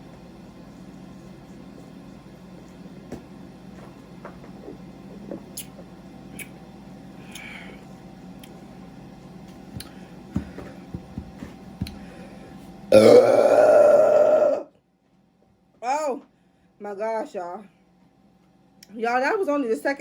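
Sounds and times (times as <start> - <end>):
steady low hum: 0.0 - 20.0
person gulping soda: 12.9 - 14.6.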